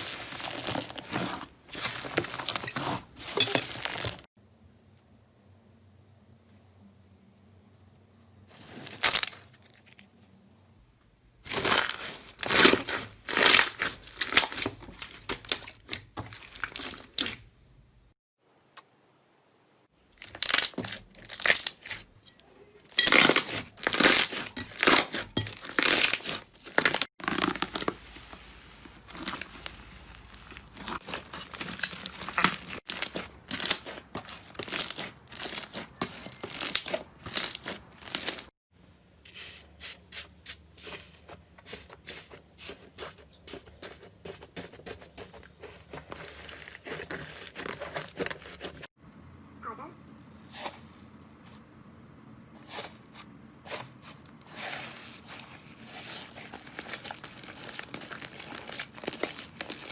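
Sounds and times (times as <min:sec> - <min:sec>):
slime crackling and popping: 0:29.1 - 0:38.5, 0:55.9 - 0:59.9.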